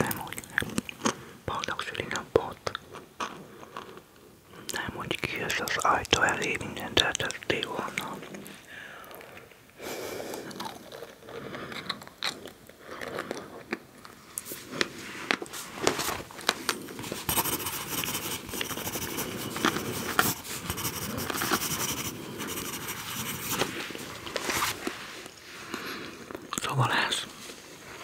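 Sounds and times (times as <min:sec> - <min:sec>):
chewing and crunching snacks: 0:00.0 - 0:17.3.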